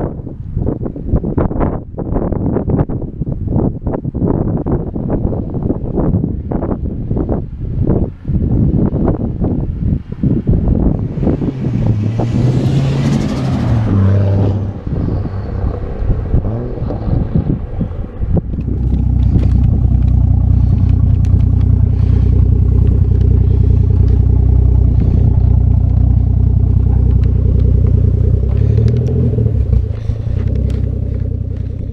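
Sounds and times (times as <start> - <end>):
car exhaust revving: 10.9 - 31.9.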